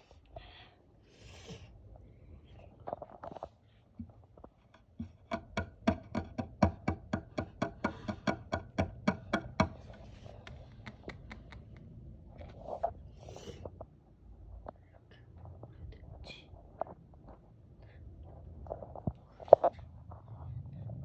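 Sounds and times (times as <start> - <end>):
sharp taps: 5.0 - 11.8.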